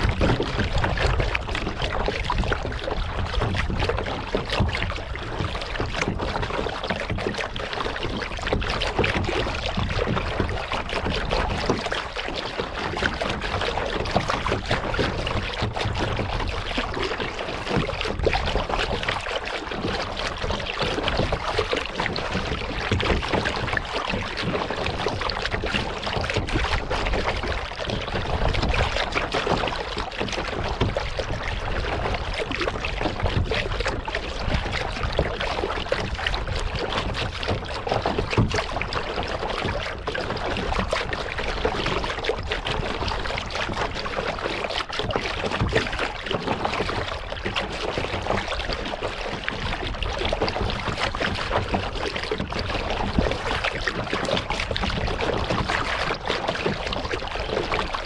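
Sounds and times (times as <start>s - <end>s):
paddle splashing water: 0.0s - 58.0s.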